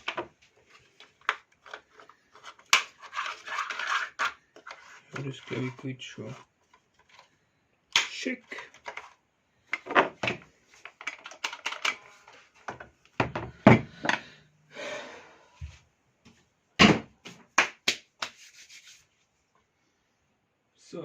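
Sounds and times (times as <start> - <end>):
rubbing scrape: 1.9 - 6.4, 18.2 - 19.2.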